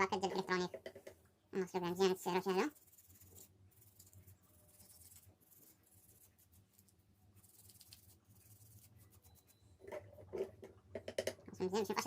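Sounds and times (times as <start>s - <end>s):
scrubbing and scratching: 1.7s - 10.5s.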